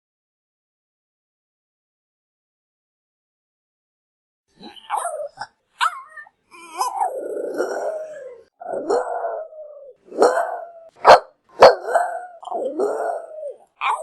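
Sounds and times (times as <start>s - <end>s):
dog barking: 4.6s - 14.0s
dog yelping: 4.6s - 14.0s
dog howling: 4.7s - 14.0s.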